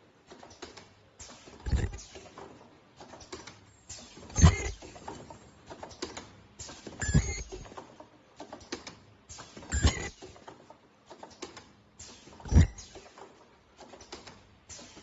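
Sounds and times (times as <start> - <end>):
welding machine clunk: 1.2 - 2.3, 3.2 - 5.0
high machine whine: 7.0 - 7.6, 9.7 - 10.2.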